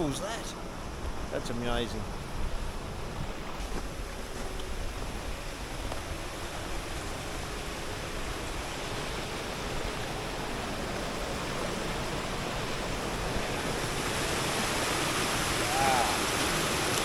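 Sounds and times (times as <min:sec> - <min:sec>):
fast-flowing river water: 0:02.8 - 0:17.0.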